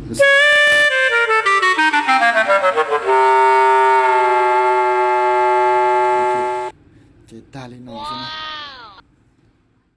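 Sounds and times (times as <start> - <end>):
descending woodwind fail notes: 0.2 - 6.7.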